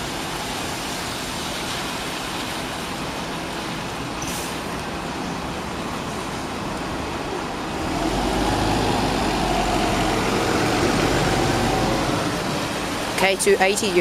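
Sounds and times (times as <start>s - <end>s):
bus engine rumbling: 3.0s - 14.0s
heavy rain hissing: 7.5s - 14.0s.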